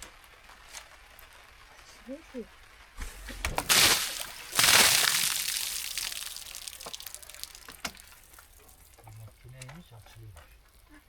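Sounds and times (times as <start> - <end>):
water splash: 3.0 - 8.9
water pouring: 3.0 - 9.5.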